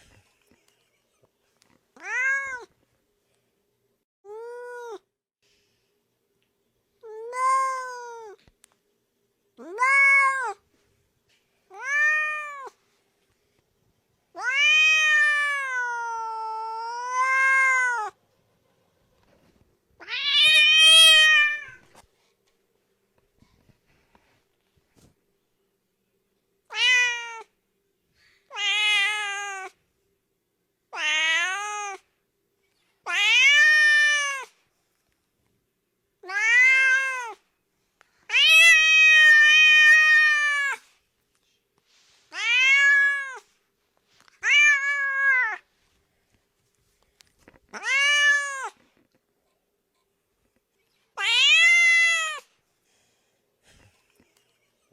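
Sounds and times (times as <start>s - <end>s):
cat meowing: 2.0s - 2.7s, 11.7s - 12.7s, 14.4s - 18.2s, 26.7s - 27.5s, 30.9s - 32.0s, 36.2s - 37.4s, 42.3s - 43.5s, 44.4s - 45.6s, 47.7s - 48.8s, 51.2s - 52.5s.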